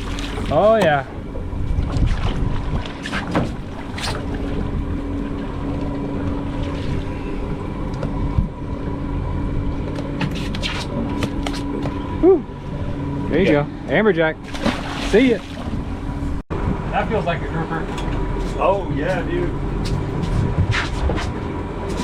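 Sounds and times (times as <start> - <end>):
boat engine idling: 0.0 - 20.6
wind on microphone: 1.3 - 5.0.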